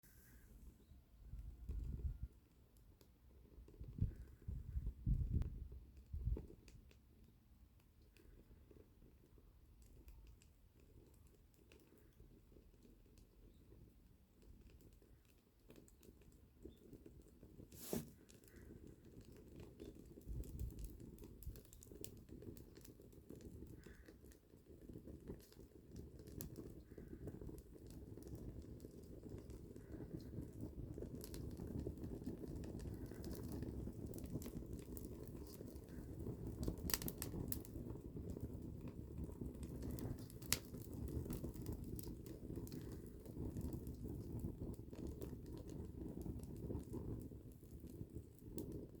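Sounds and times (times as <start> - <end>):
campfire crackling: 1.3 - 49.0
sharp pops of fire: 17.6 - 49.0.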